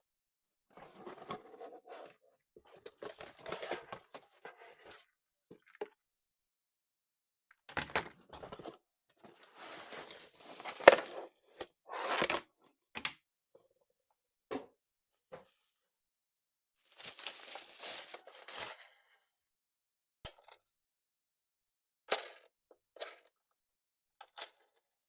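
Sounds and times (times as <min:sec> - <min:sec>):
packaging scraping and rustling: 0:09.4 - 0:11.3, 0:16.9 - 0:18.9.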